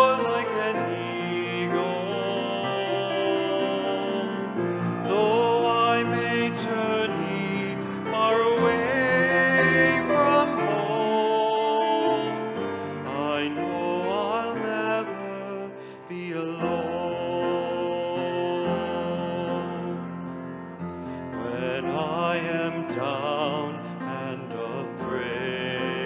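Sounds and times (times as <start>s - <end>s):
slow hymn music: 0.0s - 26.0s.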